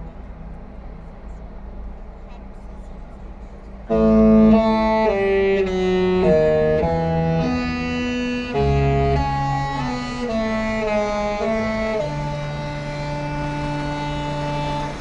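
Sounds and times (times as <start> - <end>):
musical ship horn playing tune: 3.9 - 15.0.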